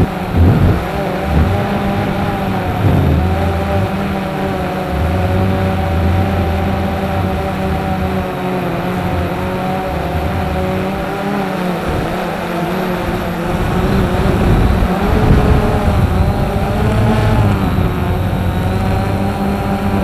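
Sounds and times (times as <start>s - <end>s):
rough low rumble: 0.0s - 11.4s
droning hum of several tones: 0.0s - 20.0s
wind buffeting microphone: 0.0s - 20.0s.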